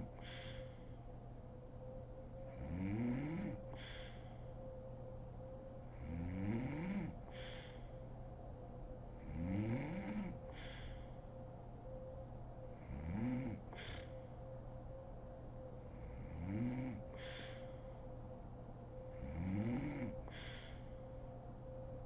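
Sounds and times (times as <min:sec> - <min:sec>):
woman snoring: 0:02.6 - 0:03.6, 0:06.0 - 0:07.2, 0:09.3 - 0:10.4, 0:12.9 - 0:13.6, 0:16.1 - 0:17.0, 0:19.2 - 0:20.2.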